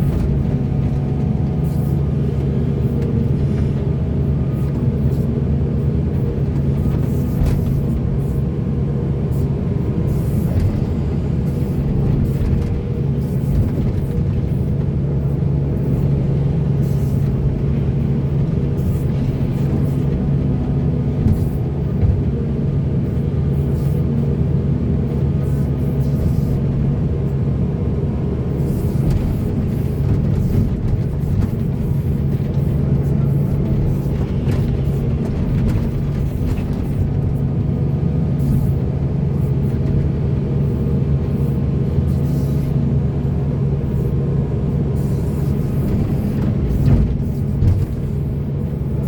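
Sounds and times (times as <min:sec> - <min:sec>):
heavy diesel engine running: 0:00.0 - 0:49.0.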